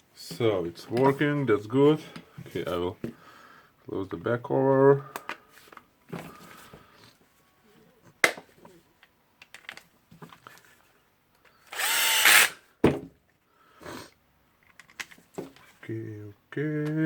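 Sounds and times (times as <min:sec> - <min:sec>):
power tool short burst: 0:11.7 - 0:12.6.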